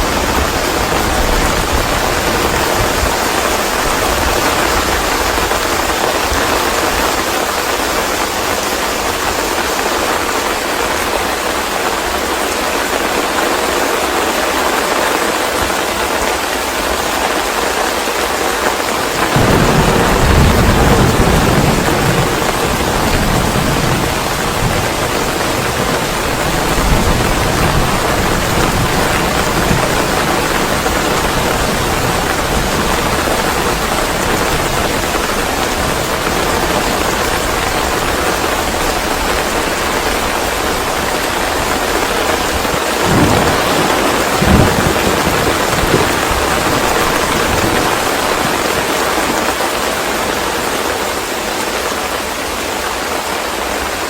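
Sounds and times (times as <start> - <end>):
thunder rumbling: 0.0 - 9.8, 19.1 - 49.3
steady rain: 0.0 - 54.0.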